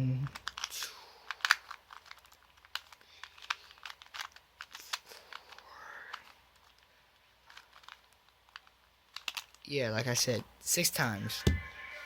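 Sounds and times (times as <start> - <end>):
puzzle cube clicking as turned: 0.2 - 9.7.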